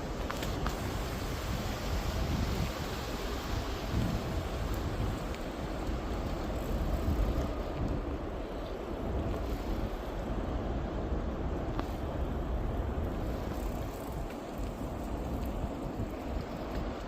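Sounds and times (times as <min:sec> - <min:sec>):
wind buffeting microphone: 0:00.0 - 0:17.0
faint tick: 0:11.7 - 0:12.0.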